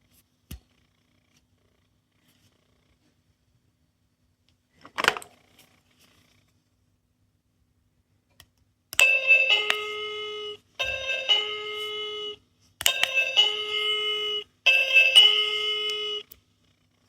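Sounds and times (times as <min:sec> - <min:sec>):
electronic doorbell chime: 0:09.0 - 0:16.3.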